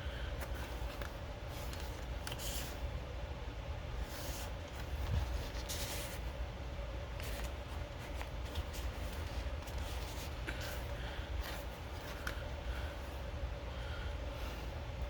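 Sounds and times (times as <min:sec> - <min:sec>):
paper pages rustling: 0:00.4 - 0:02.8, 0:04.0 - 0:06.3, 0:07.1 - 0:13.2.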